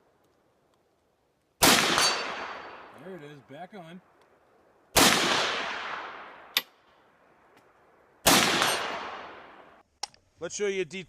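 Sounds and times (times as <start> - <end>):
rifle shots with echo: 1.6 - 3.0, 4.9 - 7.5, 8.2 - 9.8
sharp metallic clink: 1.9 - 2.8, 8.6 - 9.0.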